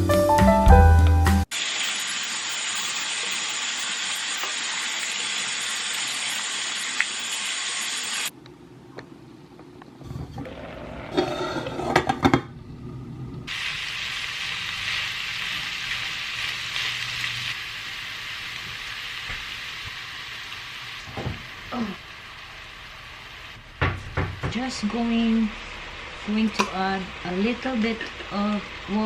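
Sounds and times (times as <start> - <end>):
meat and mushrooms sizzling: 1.4 - 8.3, 13.5 - 29.0.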